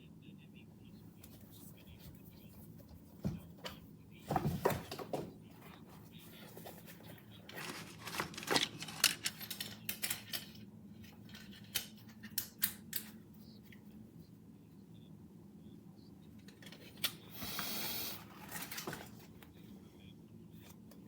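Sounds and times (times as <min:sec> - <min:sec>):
faint steady hum: 0:00.0 - 0:21.0
packaging rustling and scraping: 0:04.3 - 0:09.8, 0:17.6 - 0:19.4.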